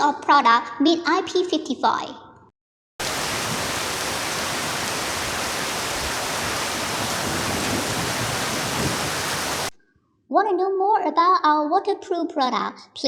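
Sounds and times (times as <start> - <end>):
spraying water: 3.0 - 9.7.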